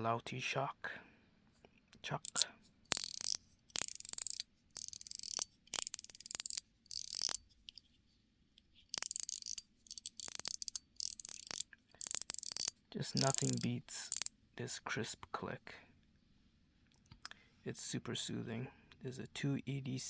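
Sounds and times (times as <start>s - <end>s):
metal fidget toy clicking: 2.2s - 7.8s, 8.9s - 14.3s.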